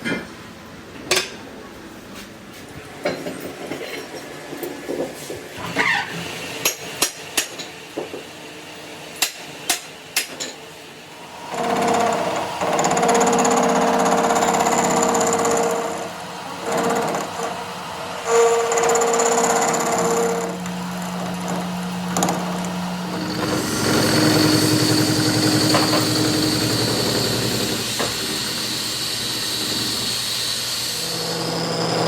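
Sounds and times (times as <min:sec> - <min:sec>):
power tool whining and rattling: 0:11.4 - 0:17.6, 0:18.2 - 0:32.0.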